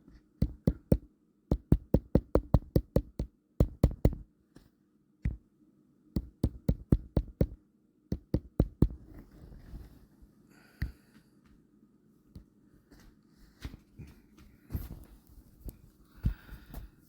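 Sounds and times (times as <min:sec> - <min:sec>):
fingers tapping on touchscreen: 0:00.4 - 0:04.2, 0:06.2 - 0:09.0.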